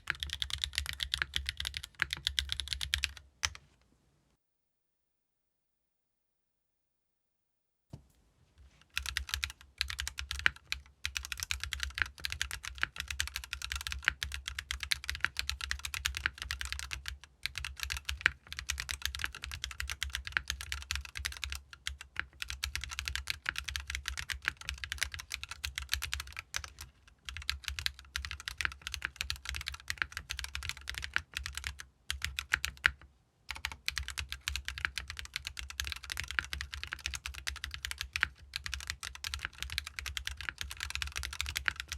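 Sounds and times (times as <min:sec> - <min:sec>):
mechanical keyboard typing: 0:00.0 - 0:03.6, 0:09.0 - 0:41.9.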